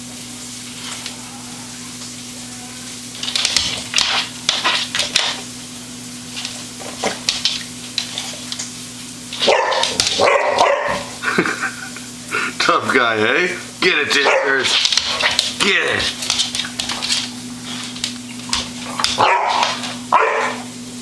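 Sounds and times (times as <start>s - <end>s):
dog barking: 9.4s - 11.1s, 14.2s - 14.7s, 19.0s - 20.7s
dog snuffling and scuffling: 14.3s - 20.0s.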